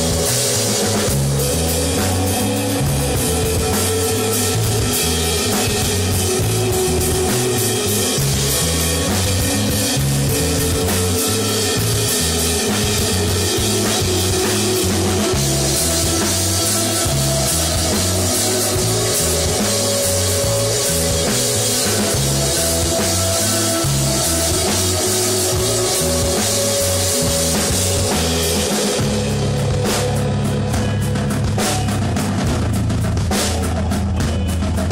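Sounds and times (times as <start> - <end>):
rock band playing: 0.0 - 34.9.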